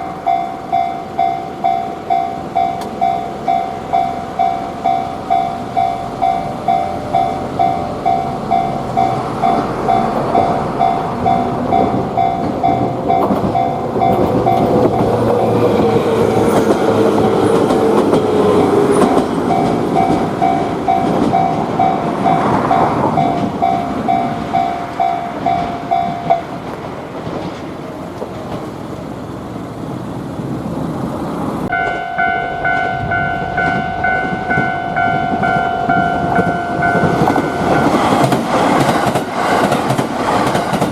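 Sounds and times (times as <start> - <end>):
steady ringing tone: 0.0 - 15.6, 31.7 - 38.0
level crossing warning bell: 0.0 - 26.6, 31.7 - 38.4
train wheels clattering: 0.0 - 29.1, 31.6 - 40.9.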